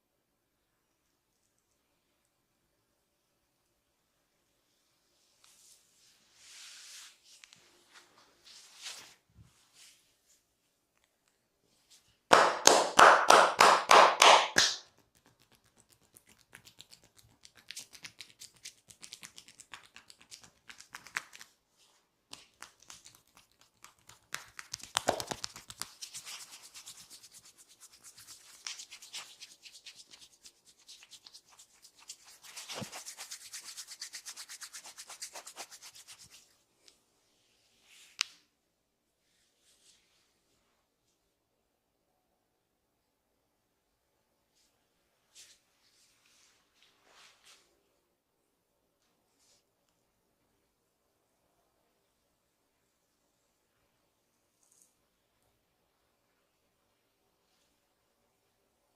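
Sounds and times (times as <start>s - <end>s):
hands rubbing skin and hair: 5.4s - 10.4s, 11.9s - 37.0s.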